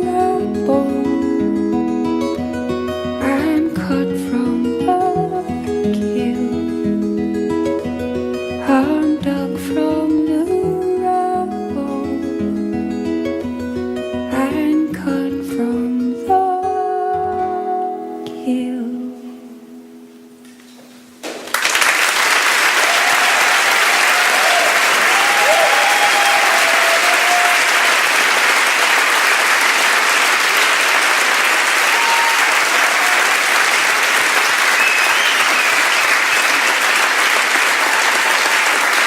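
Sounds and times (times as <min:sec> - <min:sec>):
audience applauding: 0:21.2 - 0:39.0
people cheering: 0:21.5 - 0:39.0.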